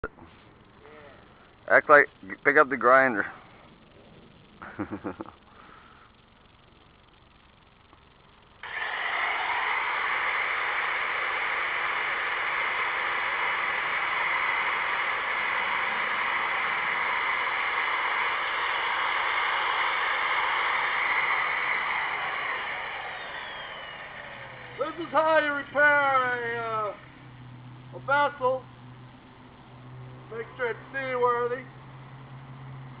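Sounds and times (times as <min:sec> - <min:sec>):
power grinder whining: 0:08.6 - 0:27.2.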